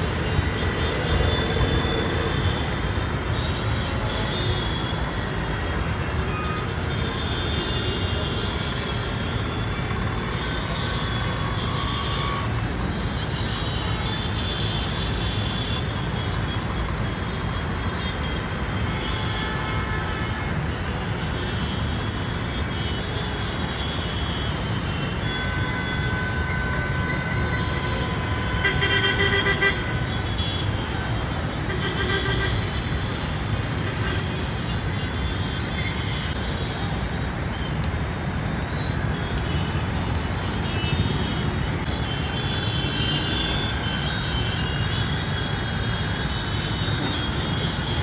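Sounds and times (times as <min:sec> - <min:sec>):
road traffic rumbling: 0:00.0 - 0:48.0
vehicle horns honking: 0:24.5 - 0:36.7.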